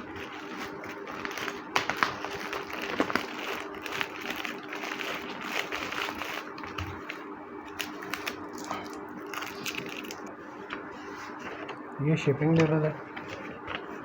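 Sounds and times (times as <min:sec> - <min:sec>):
packing materials crinkling: 0:00.0 - 0:10.3
steady low hum: 0:00.0 - 0:14.0.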